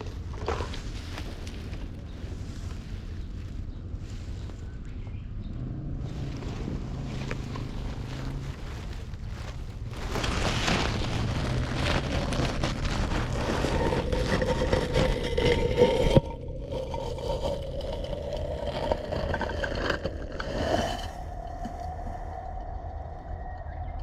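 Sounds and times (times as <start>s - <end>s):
wind on microphone: 0.0s - 24.0s
passing engine hum: 2.0s - 14.0s
water washing over rocks: 9.9s - 22.1s.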